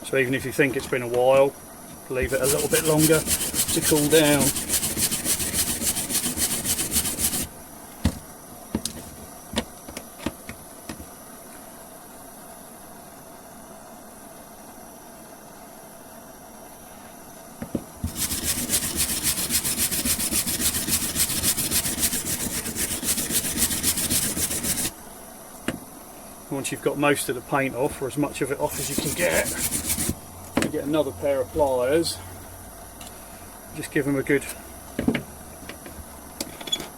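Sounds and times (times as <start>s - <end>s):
wire brush scrubbing metal: 2.2s - 7.5s, 18.0s - 25.0s, 28.5s - 30.2s.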